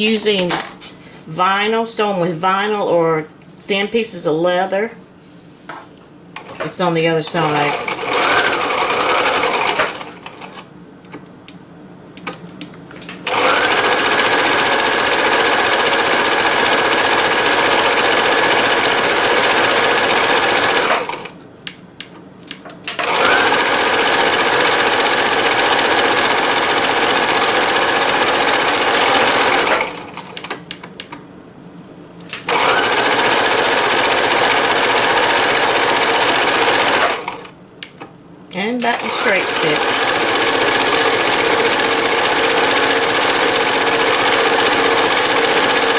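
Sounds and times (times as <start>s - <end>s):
sewing machine stitching: 7.3s - 10.6s, 13.2s - 21.3s, 22.9s - 30.6s, 32.4s - 37.5s, 38.8s - 45.9s.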